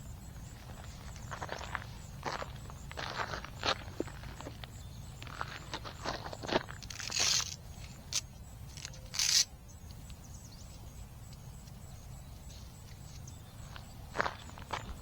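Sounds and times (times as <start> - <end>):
faint outdoor background: 0.0 - 15.0
footsteps crunching on a trail: 0.2 - 7.6, 12.2 - 15.0.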